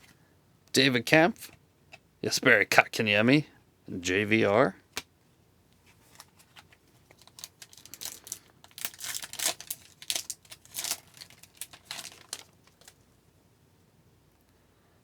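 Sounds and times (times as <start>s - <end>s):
foil wrapper tearing and crinkling: 6.1s - 13.0s.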